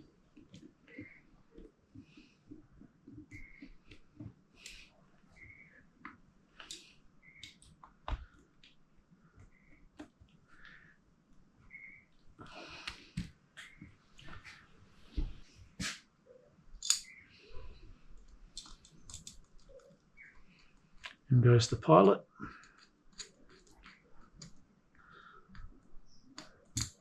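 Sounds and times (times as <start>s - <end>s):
small metal parts clicking: 16.8s - 17.2s, 18.5s - 19.7s.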